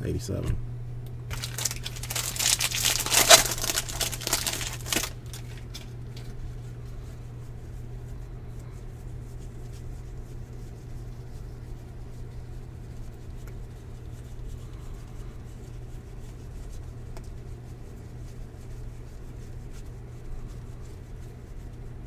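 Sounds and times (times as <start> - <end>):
low electrical hum: 0.0 - 22.0
cards rustling: 1.3 - 6.3.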